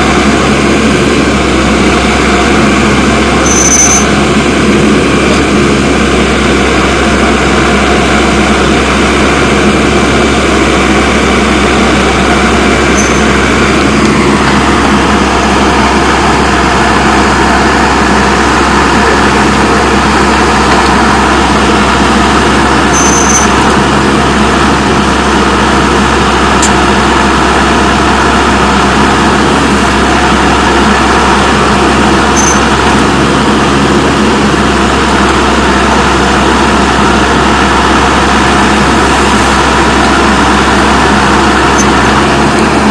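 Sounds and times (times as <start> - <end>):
backhoe diesel engine running: 0.0 - 42.9
high-pitched squeaks: 3.4 - 4.1, 12.9 - 13.4, 22.9 - 23.6, 32.3 - 32.6.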